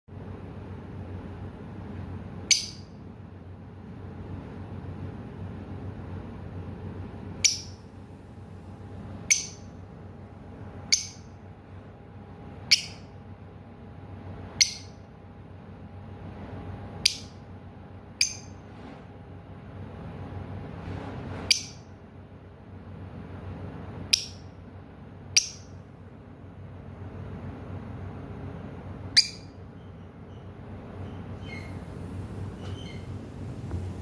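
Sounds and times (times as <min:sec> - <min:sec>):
bird chirping high-pitched: 0:02.4 - 0:03.1, 0:07.4 - 0:07.9, 0:09.2 - 0:09.8, 0:10.8 - 0:11.4, 0:12.6 - 0:13.2, 0:14.5 - 0:15.1, 0:17.0 - 0:17.4, 0:18.1 - 0:18.6, 0:21.5 - 0:21.9, 0:24.1 - 0:24.6, 0:25.3 - 0:25.8, 0:29.1 - 0:31.8, 0:32.5 - 0:33.1.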